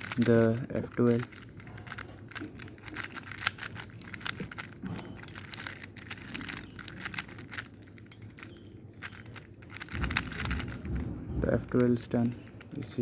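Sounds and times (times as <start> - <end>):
puzzle cube clicking: 0.0 - 13.0
low bump: 9.7 - 12.2.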